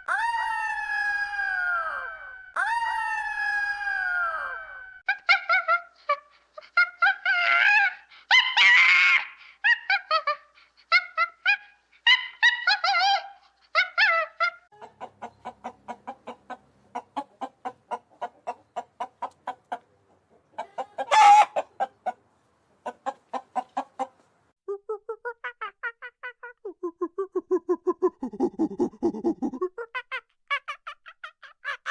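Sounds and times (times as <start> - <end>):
hen clucking: 14.7 - 24.3
hen squawk: 20.6 - 21.9.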